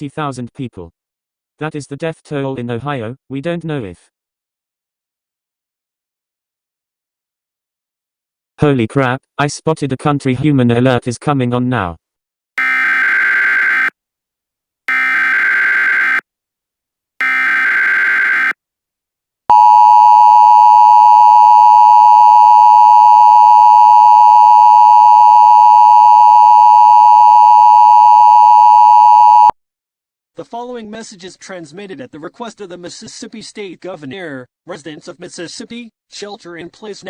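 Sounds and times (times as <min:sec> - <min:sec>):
data tone bursts: 0:12.6 - 0:13.9, 0:14.9 - 0:16.2, 0:17.2 - 0:18.6, 0:19.5 - 0:29.6
steady attention tone: 0:12.6 - 0:13.9, 0:14.9 - 0:16.2, 0:17.2 - 0:18.6, 0:19.5 - 0:29.6.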